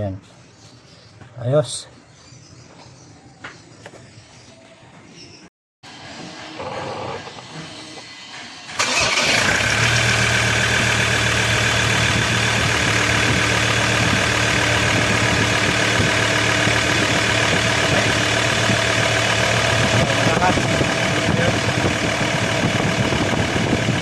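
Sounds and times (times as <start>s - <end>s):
car engine starting and idling: 8.0s - 24.0s.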